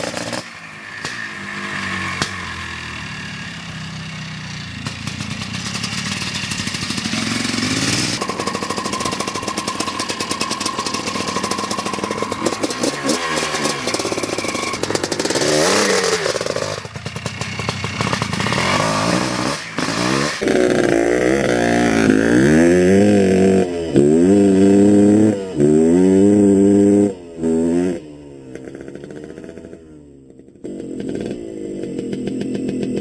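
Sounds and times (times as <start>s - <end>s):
dirt bike engine revving: 0.0s - 33.0s.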